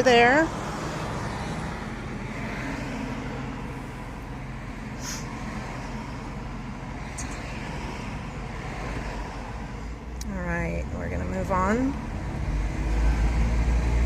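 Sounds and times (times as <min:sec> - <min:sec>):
car engine and road noise: 0:00.0 - 0:14.0
brief high hiss: 0:05.0 - 0:05.3.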